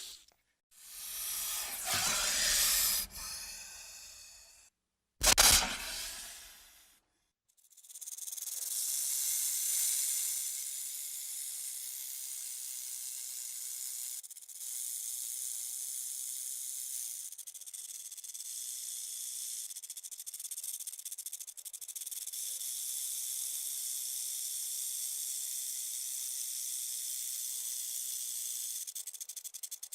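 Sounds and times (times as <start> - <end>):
snake hissing: 0.8 - 4.6, 5.3 - 6.8.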